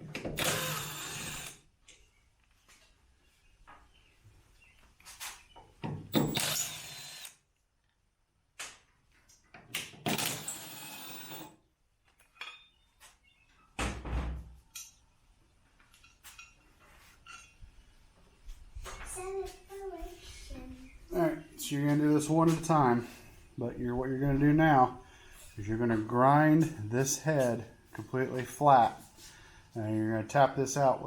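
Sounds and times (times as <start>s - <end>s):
power tool spinning: 0.4s - 1.6s, 6.2s - 7.4s, 10.1s - 11.6s.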